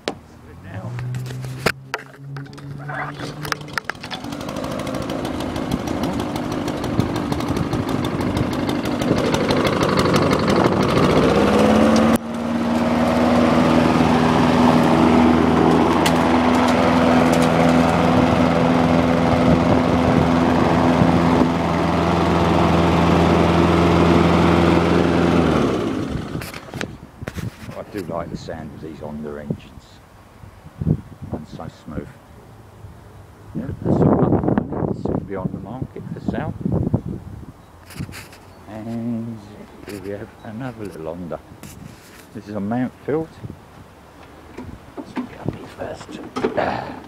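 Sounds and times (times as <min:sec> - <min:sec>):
lawn mower engine running: 0:01.1 - 0:28.1.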